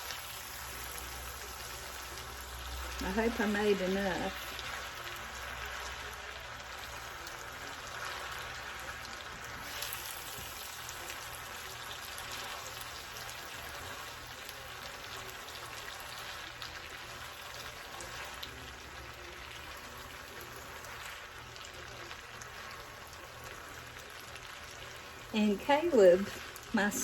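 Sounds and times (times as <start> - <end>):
food sizzling in frying pan: 0.0 - 27.0.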